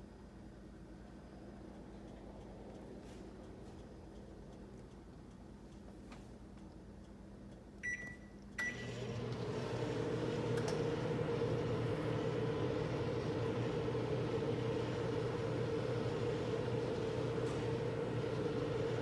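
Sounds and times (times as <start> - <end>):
microwave oven humming: 0.0 - 19.0
microwave keypad beeping: 7.8 - 9.0.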